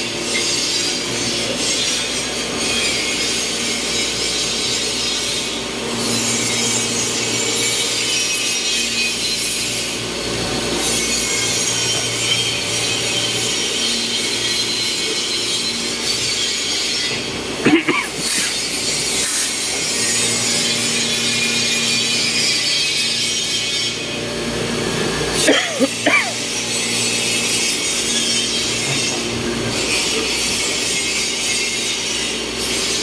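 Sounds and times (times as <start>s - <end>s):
milling machine cutting hiss: 0.0s - 33.0s.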